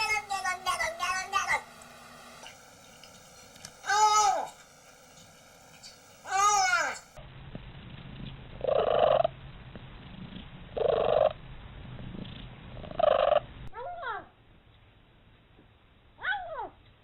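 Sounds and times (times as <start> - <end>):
cat purring: 8.2 - 9.4, 10.0 - 11.4, 12.0 - 13.5.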